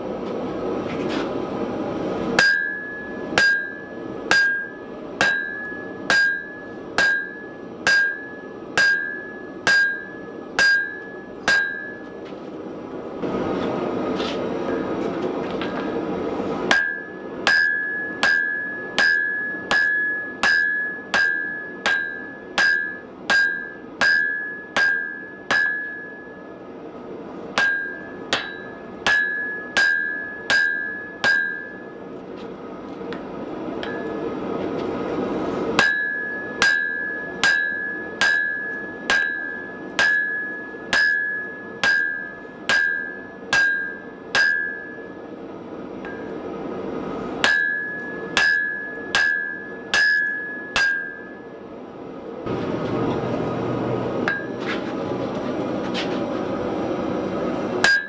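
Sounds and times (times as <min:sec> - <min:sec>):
hammer striking steel on anvil: 0:02.4 - 0:12.3, 0:16.6 - 0:26.7, 0:27.4 - 0:32.1, 0:33.8 - 0:34.4, 0:35.2 - 0:45.4, 0:46.0 - 0:51.6, 0:54.2 - 0:54.7, 0:57.8 - 0:58.0.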